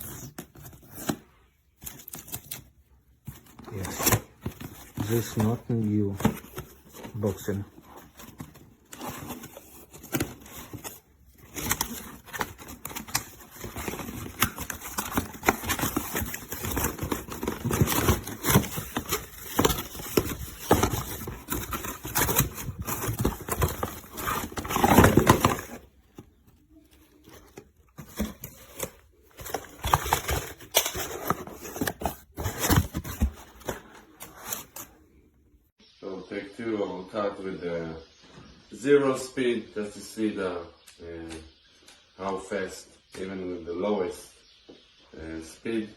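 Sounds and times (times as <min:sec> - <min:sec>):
packaging rustling and crinkling: 0:00.0 - 0:35.0.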